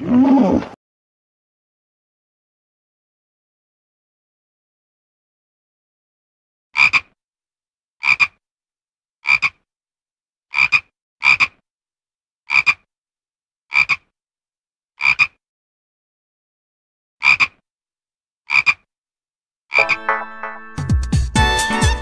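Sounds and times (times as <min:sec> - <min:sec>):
frog croaking: 0:06.8 - 0:07.2, 0:08.0 - 0:08.4, 0:09.2 - 0:09.6, 0:10.5 - 0:11.6, 0:12.5 - 0:12.9, 0:13.7 - 0:14.1, 0:15.0 - 0:15.4, 0:17.2 - 0:17.6, 0:18.5 - 0:18.9.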